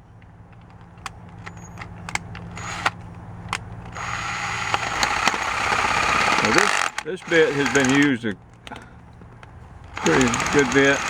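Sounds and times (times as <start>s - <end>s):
scattered clicks: 0.0s - 11.0s
electric drill grinding into steel: 1.4s - 3.0s, 3.8s - 8.9s, 9.8s - 11.0s.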